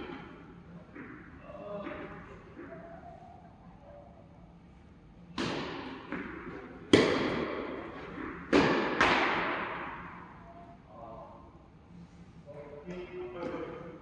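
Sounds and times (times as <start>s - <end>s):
tennis ball struck by rackets: 5.3s - 10.2s.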